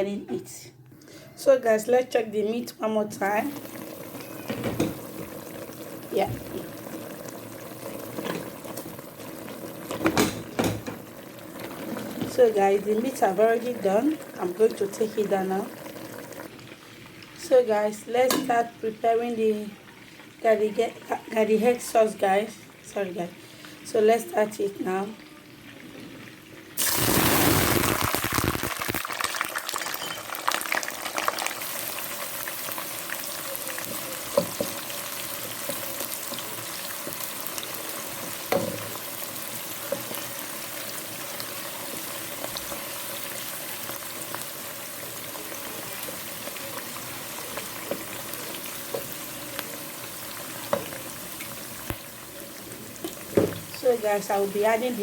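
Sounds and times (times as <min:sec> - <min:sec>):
oil sizzling in a pot: 0:03.0 - 0:55.0.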